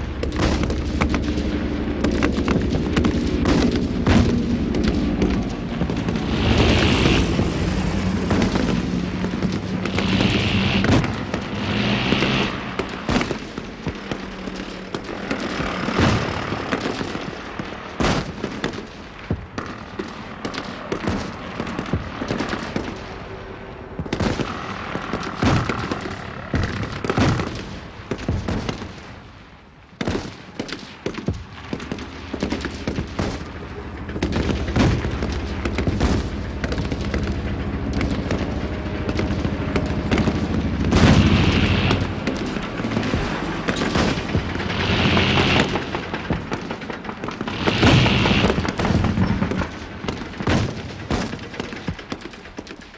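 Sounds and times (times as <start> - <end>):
explosion booms: 0.0 - 14.6, 31.3 - 51.7
heavy rumble: 0.0 - 29.9, 30.9 - 52.9
gunfire bursts: 0.0 - 52.9.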